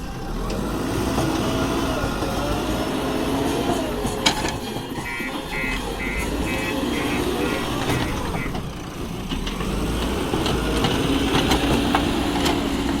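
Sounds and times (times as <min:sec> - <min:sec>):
heavy diesel engine running: 0:00.0 - 0:13.0
reversing alarm beeping: 0:05.0 - 0:08.6.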